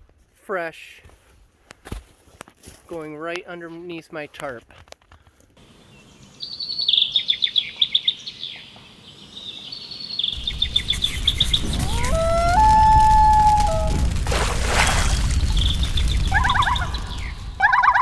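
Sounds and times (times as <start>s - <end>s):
long rising howl: 10.4s - 14.4s
rushing noise: 10.4s - 17.6s.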